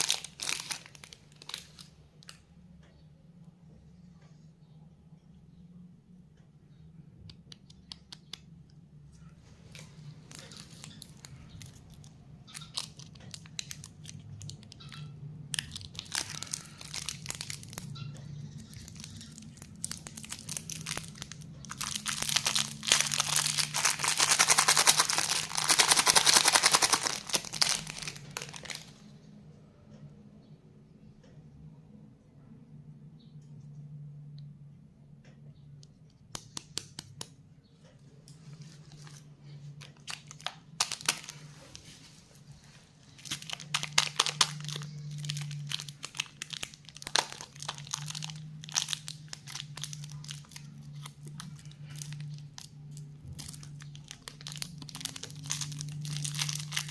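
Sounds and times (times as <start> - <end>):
plastic wrapper crinkling and tearing: 0.0 - 2.4, 9.6 - 29.1, 38.4 - 56.9.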